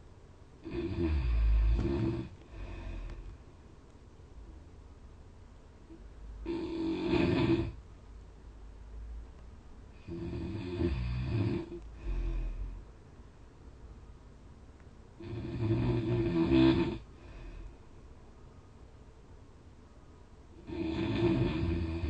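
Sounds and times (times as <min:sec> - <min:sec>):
person snoring loudly: 0:00.6 - 0:03.1, 0:06.4 - 0:07.8, 0:10.0 - 0:12.8, 0:15.2 - 0:17.6, 0:20.6 - 0:22.0.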